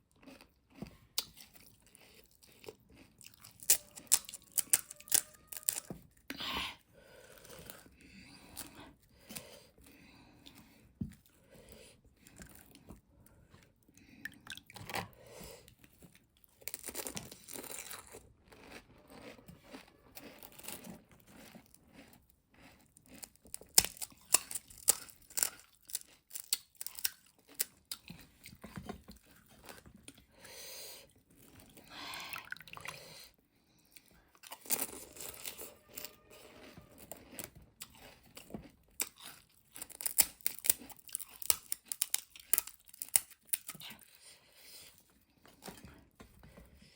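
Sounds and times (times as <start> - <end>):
crunching crisp snack: 0.1 - 6.2, 16.1 - 30.2, 34.0 - 44.2.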